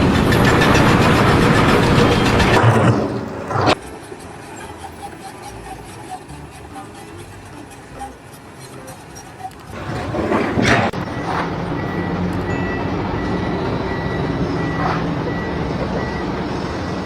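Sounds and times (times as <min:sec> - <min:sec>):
heavy vehicle engine running: 0:00.0 - 0:17.0
reversing alarm beeping: 0:09.4 - 0:17.0.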